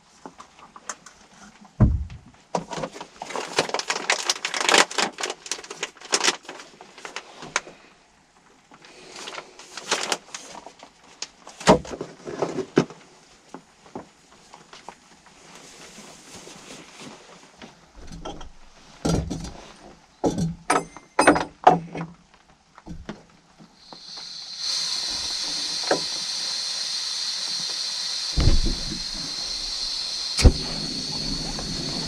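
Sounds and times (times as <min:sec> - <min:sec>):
rustling with clicks and knocks: 0:00.0 - 0:07.8, 0:08.4 - 0:24.0
dull thumps: 0:01.8 - 0:02.3, 0:28.4 - 0:32.0.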